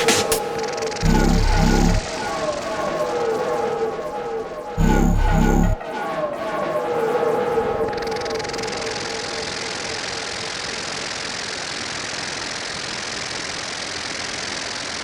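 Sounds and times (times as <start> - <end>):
rough synthesizer noise texture: 0.0 - 6.3
pitched synth glides: 1.0 - 2.4, 4.8 - 5.9.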